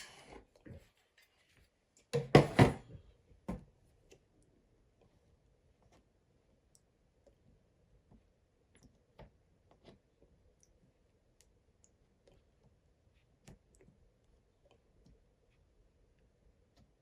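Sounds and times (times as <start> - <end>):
faint clicks and taps: 3.5 - 17.0.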